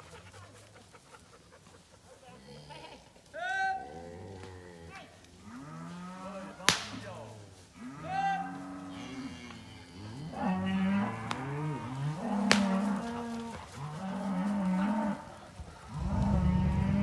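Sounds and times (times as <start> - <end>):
sharp crack: 6.7 - 7.2, 12.5 - 12.9, 15.6 - 17.0
cattle mooing: 7.8 - 17.0.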